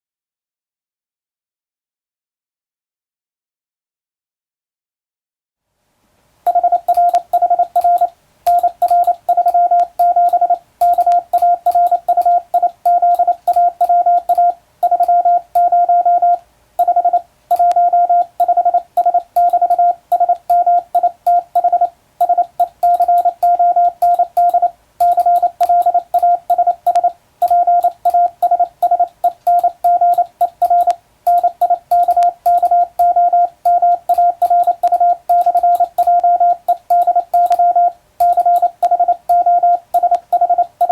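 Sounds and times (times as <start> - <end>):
morse code tone: 6.5 - 40.9
telegraph key clicks: 22.2 - 40.9.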